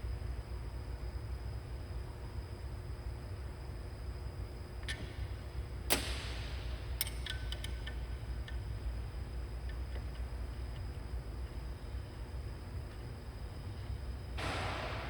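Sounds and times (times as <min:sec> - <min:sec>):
steady low hum: 0:00.0 - 0:15.0.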